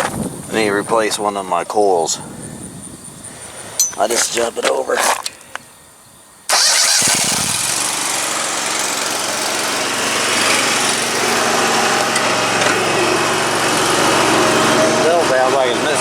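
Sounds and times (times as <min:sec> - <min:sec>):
mower engine catching: 0:03.8 - 0:05.4, 0:06.5 - 0:15.1
mower engine running with a miss: 0:06.5 - 0:16.0.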